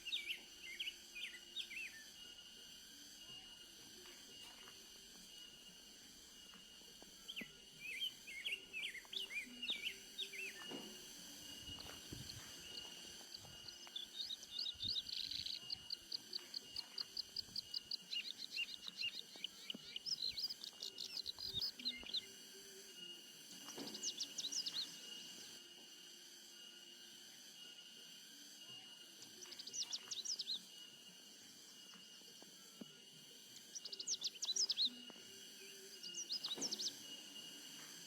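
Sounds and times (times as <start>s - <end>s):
small bird chirping: 7.2s - 22.4s, 33.6s - 37.1s.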